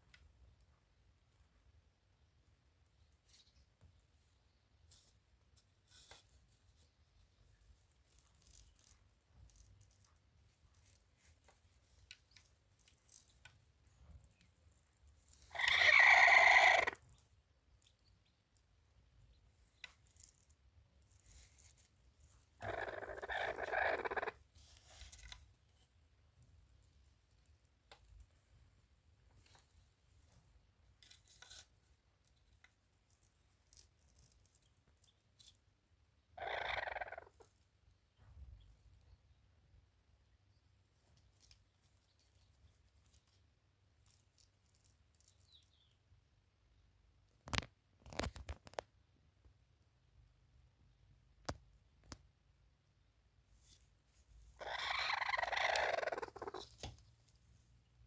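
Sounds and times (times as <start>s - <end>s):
faint clicks and rustles: 2.8s - 15.5s, 17.0s - 35.8s, 40.8s - 46.0s, 47.3s - 49.0s
loud animal call: 15.5s - 17.0s, 22.6s - 24.4s, 36.4s - 37.3s.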